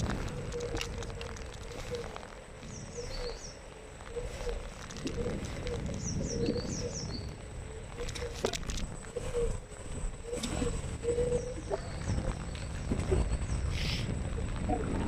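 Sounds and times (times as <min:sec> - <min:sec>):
small birds chirping: 0:00.0 - 0:14.8
faint wavering hum: 0:00.0 - 0:15.0
low rumble: 0:00.0 - 0:15.0.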